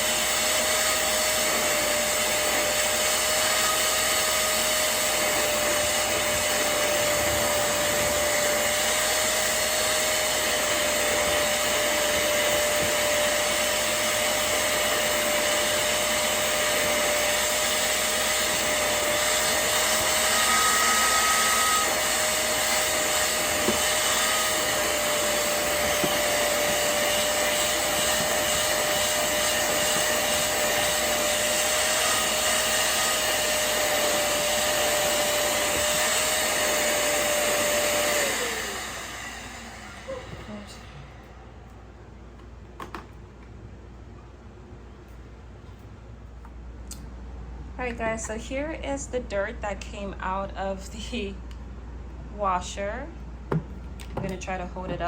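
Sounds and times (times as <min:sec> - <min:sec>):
spot cleaner suction motor whining: 0:00.0 - 0:41.8.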